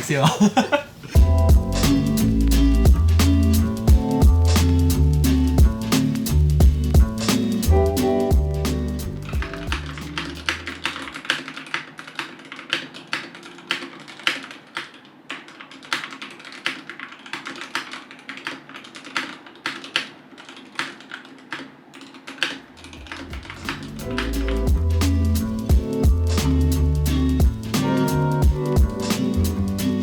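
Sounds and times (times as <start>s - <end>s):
faint background music: 1.2s - 21.1s, 22.4s - 30.0s
mechanical keyboard typing: 9.3s - 23.9s.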